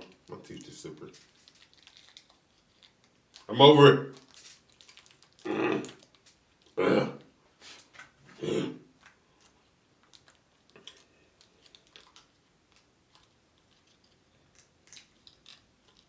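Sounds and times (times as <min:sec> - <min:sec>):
chewing mouth clicks and smacks: 0:00.0 - 0:03.5, 0:04.1 - 0:06.8, 0:09.0 - 0:16.0
person grunting: 0:05.5 - 0:06.0, 0:06.8 - 0:07.2, 0:08.4 - 0:08.8.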